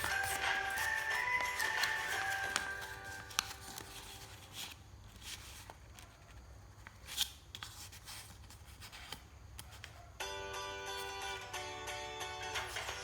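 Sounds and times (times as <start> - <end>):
paper crinkles: 0.0 - 10.1
paper rustling and folding: 0.0 - 10.2, 12.5 - 13.0.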